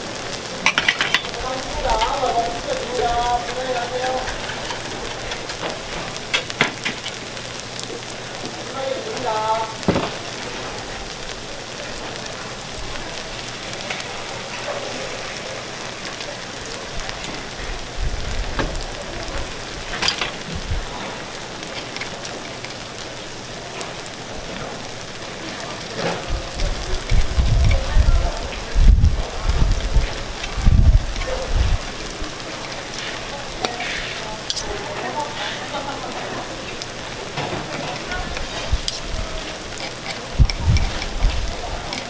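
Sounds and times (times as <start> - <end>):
food sizzling on griddle: 0.0 - 42.0
low rumbling bumps: 40.4 - 41.7.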